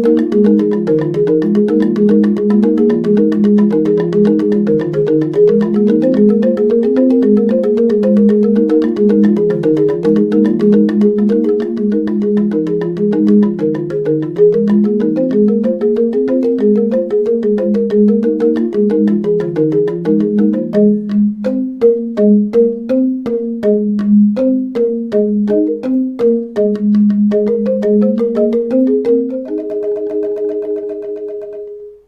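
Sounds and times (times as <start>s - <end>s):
instrumental background music: 0.0s - 32.0s.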